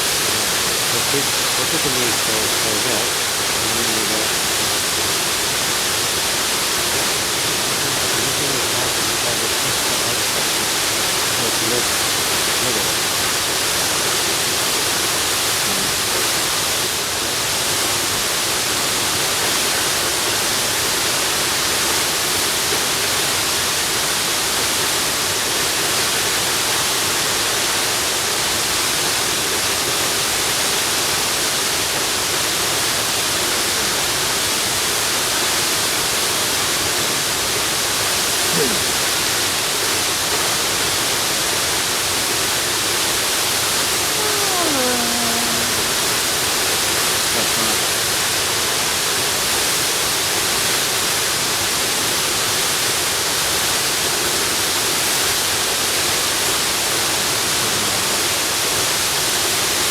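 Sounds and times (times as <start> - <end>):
waterfall rushing: 0.0 - 19.3.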